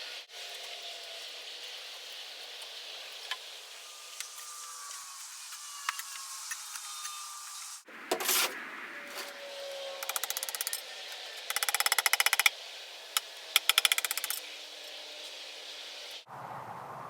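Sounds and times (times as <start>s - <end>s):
hand tool scraping: 3.8s - 12.5s.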